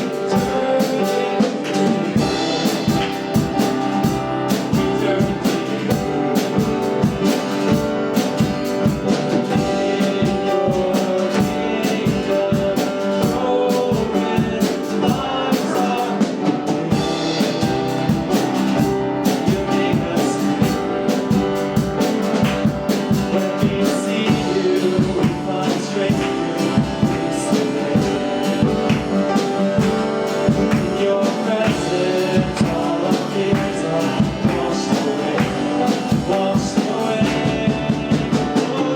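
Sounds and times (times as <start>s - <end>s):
singing: 0.0s - 6.9s, 9.5s - 18.1s, 23.1s - 28.9s, 30.5s - 38.9s
worship band music: 0.0s - 38.9s.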